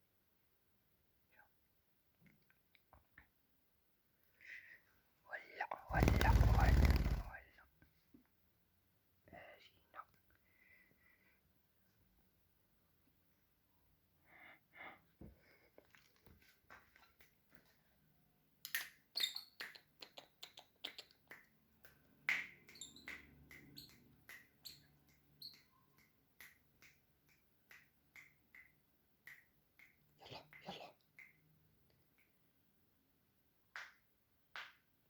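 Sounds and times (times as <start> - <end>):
bird chirping: 22.6 - 25.7.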